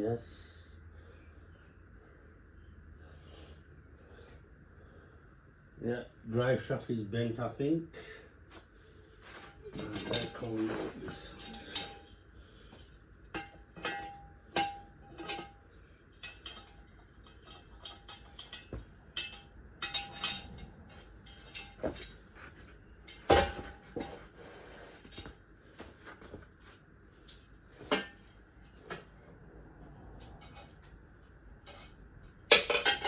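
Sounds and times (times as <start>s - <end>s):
metal tools clinking and knocking: 9.3s - 24.3s, 25.0s - 26.4s, 27.2s - 29.1s, 29.8s - 33.0s.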